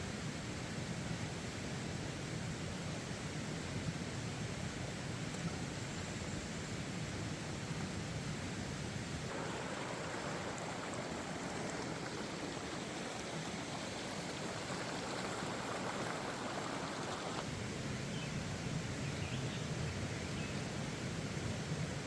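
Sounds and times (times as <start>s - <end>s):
mountain stream rushing: 9.2s - 17.6s.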